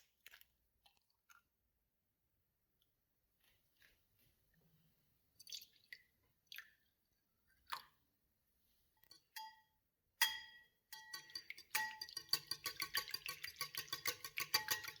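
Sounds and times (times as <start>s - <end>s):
clinks against a bowl: 9.1s - 15.0s.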